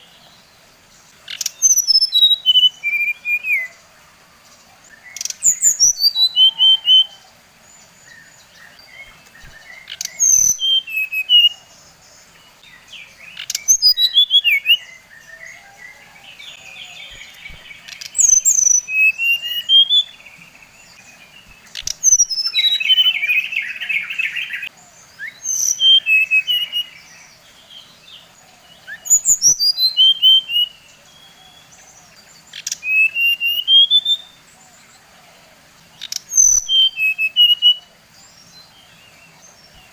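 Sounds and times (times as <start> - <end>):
harsh buzzy bird chatter: 1.2 - 2.3, 16.8 - 24.7
bird singing whistled notes: 1.3 - 3.8, 4.9 - 28.2, 28.8 - 34.6, 36.0 - 39.9.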